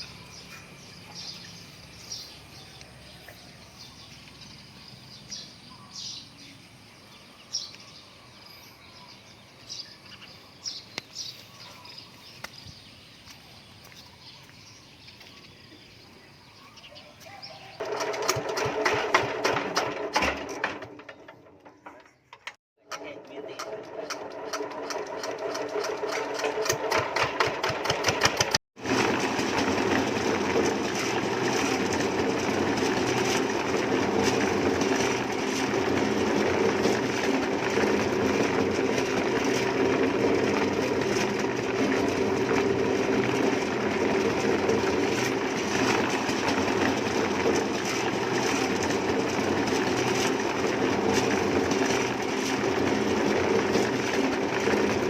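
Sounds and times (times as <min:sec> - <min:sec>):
fast mechanical clicking: 0:22.3 - 0:55.0
steady machine drone: 0:28.8 - 0:55.0.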